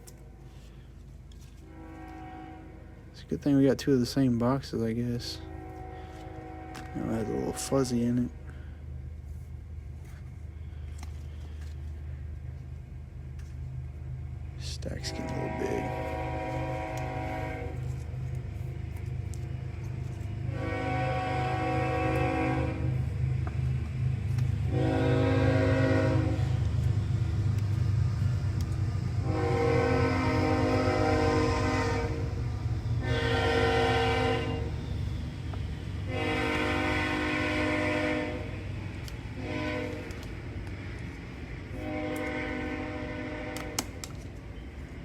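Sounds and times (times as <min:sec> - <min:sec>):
train rumble: 0:00.0 - 0:45.0
train horn blasts: 0:01.4 - 0:03.4, 0:05.1 - 0:08.7, 0:14.6 - 0:18.4, 0:20.2 - 0:23.1, 0:24.6 - 0:26.9, 0:29.2 - 0:40.3, 0:41.7 - 0:44.7.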